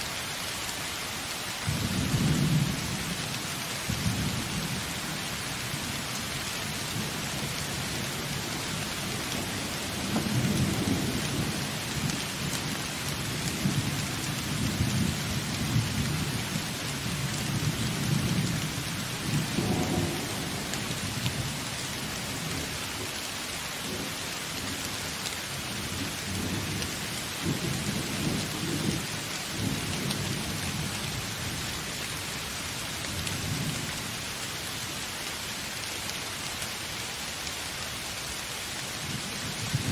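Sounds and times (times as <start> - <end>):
steady rain falling: 0.0 - 39.9
thunder rumbling: 19.2 - 22.7.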